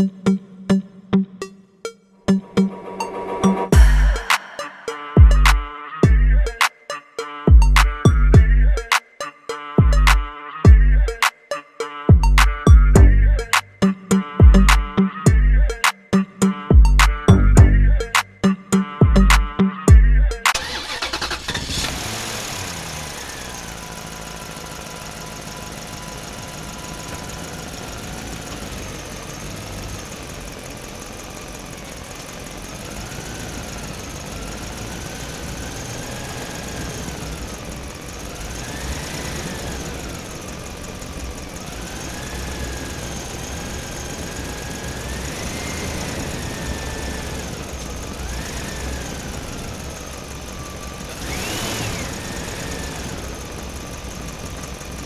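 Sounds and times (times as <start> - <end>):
low rumble: 2.4 - 6.5
toy truck motor whining: 20.6 - 55.0.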